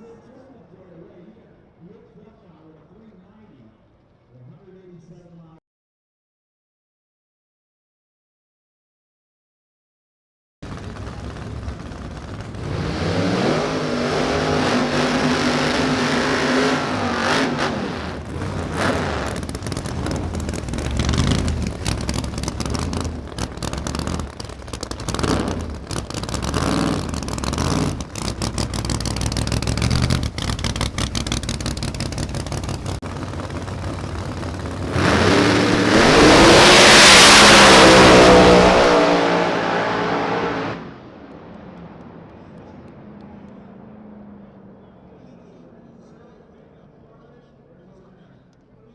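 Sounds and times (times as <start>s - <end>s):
race car engine revving: 10.7s - 45.0s.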